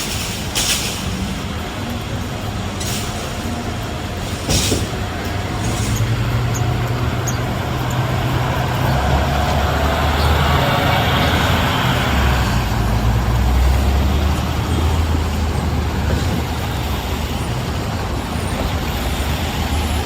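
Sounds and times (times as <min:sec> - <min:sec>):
heavy vehicle engine running: 0:00.0 - 0:20.0
street traffic: 0:00.0 - 0:20.0.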